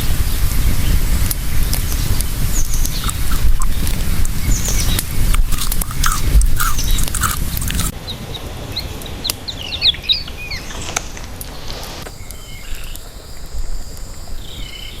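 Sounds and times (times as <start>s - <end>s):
bird chirps: 2.5s - 7.3s, 12.1s - 15.0s
high insect trill: 4.6s - 7.9s, 12.1s - 15.0s.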